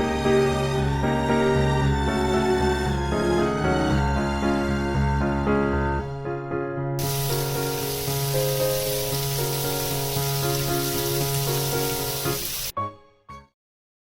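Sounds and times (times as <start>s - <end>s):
soft piano music: 0.0s - 13.5s
loud steady hiss: 7.0s - 12.7s.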